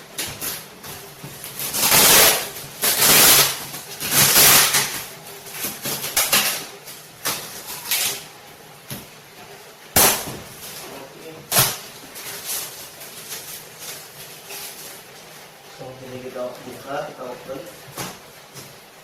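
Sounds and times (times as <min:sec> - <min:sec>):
cardboard packaging rustling: 0:00.0 - 0:08.8, 0:10.0 - 0:19.0.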